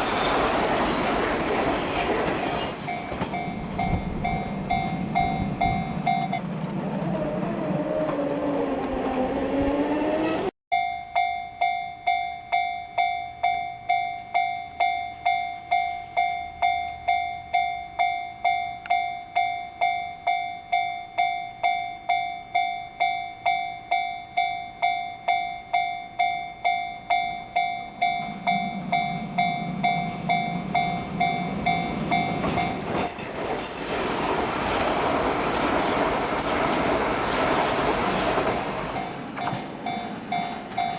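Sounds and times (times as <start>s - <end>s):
crossing warning bell ringing: 0.0s - 0.6s, 2.4s - 6.6s, 10.7s - 40.9s
train rumble and rail noise: 0.0s - 10.5s, 25.7s - 40.9s.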